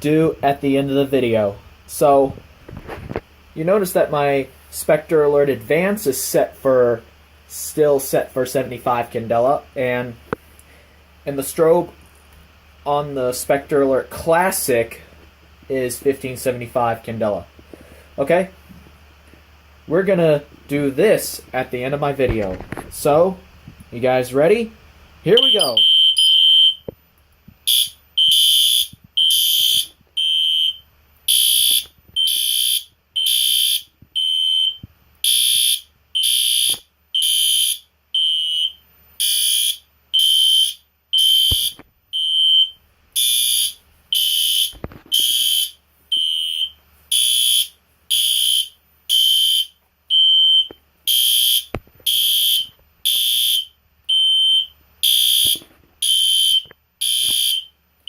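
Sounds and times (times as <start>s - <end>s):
fire alarm horns blasting: 25.3s - 26.9s, 27.7s - 57.8s.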